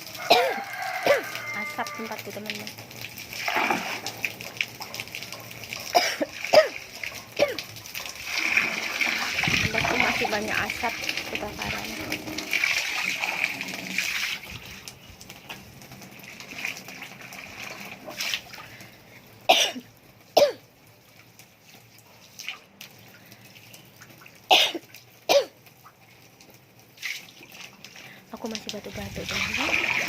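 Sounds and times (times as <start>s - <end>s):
hose spraying water: 0.0s - 19.3s, 26.9s - 30.0s
woman coughing: 0.3s - 1.2s, 5.9s - 6.8s, 19.5s - 19.8s, 20.4s - 20.6s, 24.5s - 25.5s.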